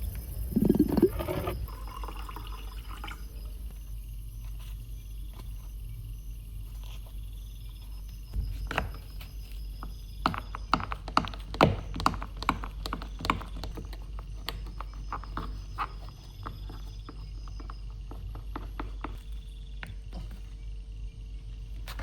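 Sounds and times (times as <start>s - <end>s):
low steady hum: 0.0s - 10.6s.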